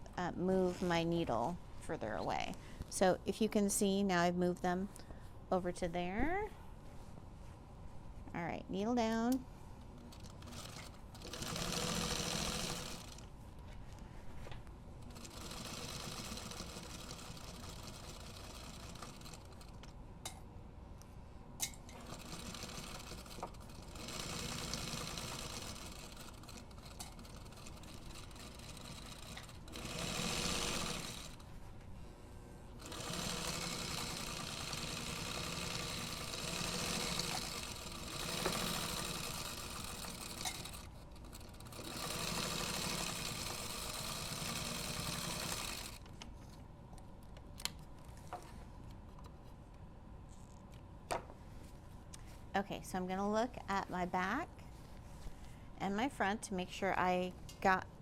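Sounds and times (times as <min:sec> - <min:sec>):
sewing machine stitching: 0:10.1 - 0:13.2, 0:15.1 - 0:19.7, 0:21.9 - 0:31.4, 0:32.8 - 0:46.0.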